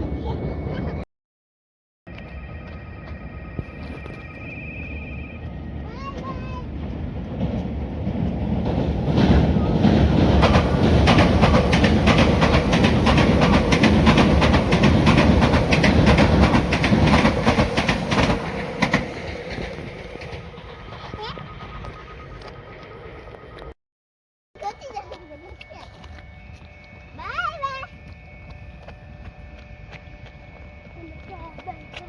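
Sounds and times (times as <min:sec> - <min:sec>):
train wheels clattering: 0:06.0 - 0:22.5.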